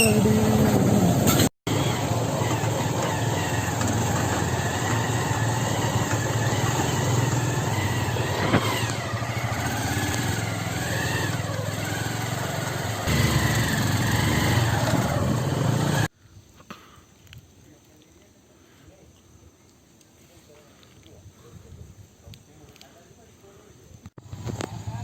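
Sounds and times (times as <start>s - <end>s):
motorcycle engine running: 0.0s - 16.1s
faint outdoor sounds: 0.0s - 25.0s
wind noise on microphone: 21.2s - 22.5s.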